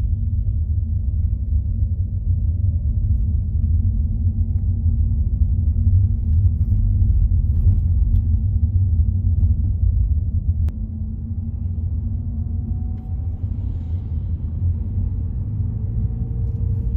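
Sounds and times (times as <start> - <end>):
car driving on road: 0.0 - 16.9
faint whine rising in pitch: 10.7 - 16.9.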